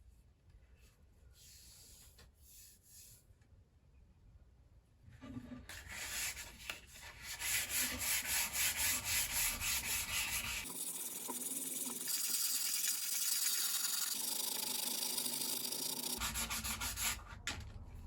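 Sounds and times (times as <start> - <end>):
hand sanding wood: 6.0 - 10.7, 15.2 - 17.2.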